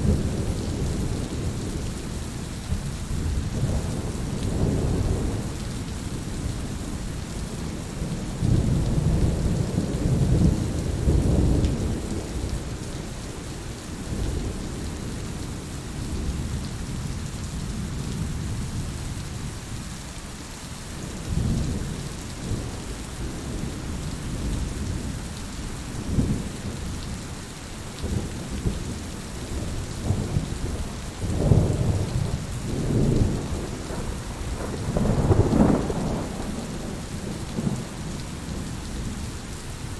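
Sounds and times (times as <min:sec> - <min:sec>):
steady rain hiss: 0:00.0 - 0:39.9
rolling thunder: 0:28.0 - 0:39.2.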